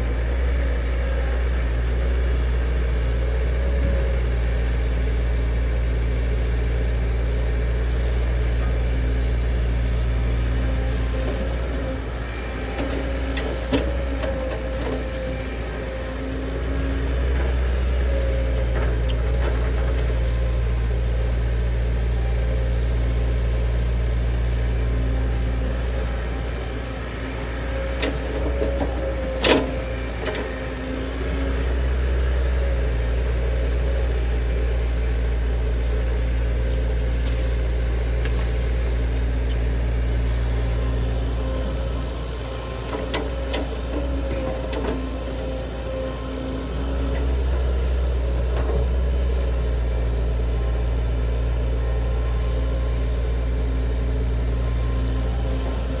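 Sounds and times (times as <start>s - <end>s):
diesel engine droning: 0.0s - 56.0s.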